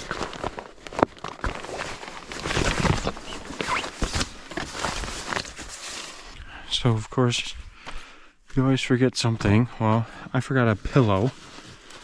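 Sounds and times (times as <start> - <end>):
tent fabric rustling: 0.1 - 6.4.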